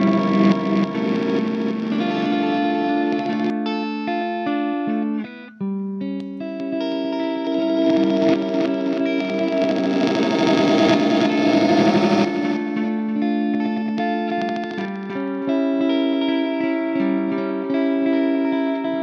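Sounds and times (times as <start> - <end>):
electric guitar with glitch delay: 0.0 - 19.0.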